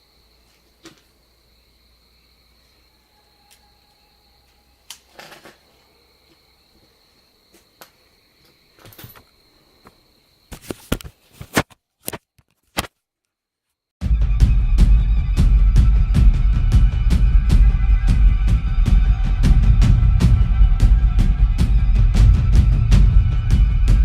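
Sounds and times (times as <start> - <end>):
crickets chirping: 0.0 - 11.5.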